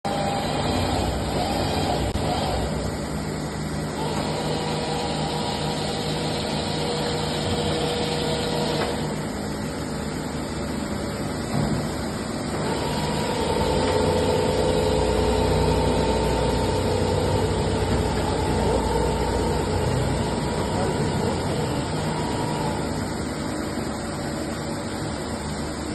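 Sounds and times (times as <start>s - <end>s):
motor whine: 0.1s - 3.2s, 3.8s - 9.4s, 12.5s - 23.3s
milling machine humming: 0.1s - 25.9s.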